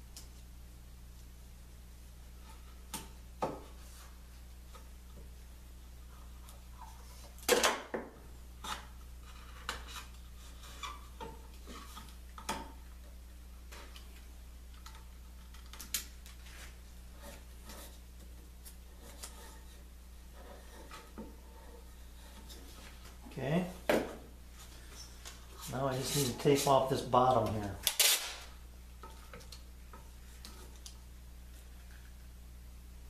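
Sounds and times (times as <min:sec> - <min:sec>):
packing tape ripping off roll: 0:27.8 - 0:28.5.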